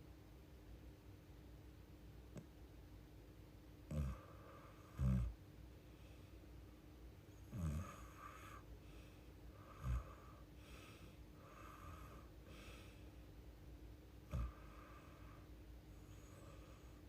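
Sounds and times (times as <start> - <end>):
soft breathing: 4.1 - 5.0, 5.8 - 13.4, 14.3 - 17.0
woman snoring: 7.5 - 8.6.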